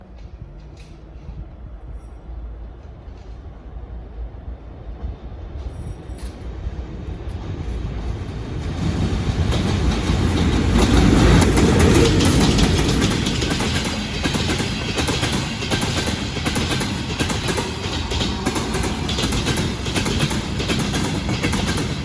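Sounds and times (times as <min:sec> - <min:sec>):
train rumble: 0:00.0 - 0:22.0
wheel clatter over rails: 0:08.1 - 0:22.0.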